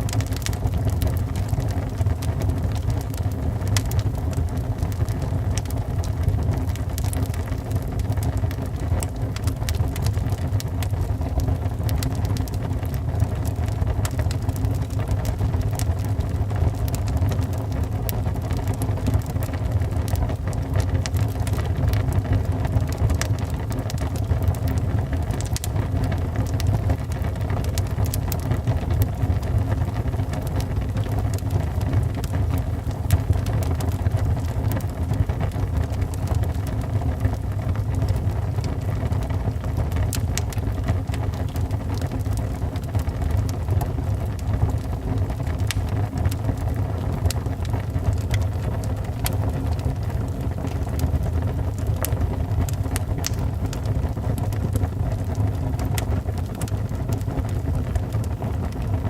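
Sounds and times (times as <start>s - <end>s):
fire crackles and pops: 0.0s - 59.0s
low rumble of flames: 0.0s - 59.0s.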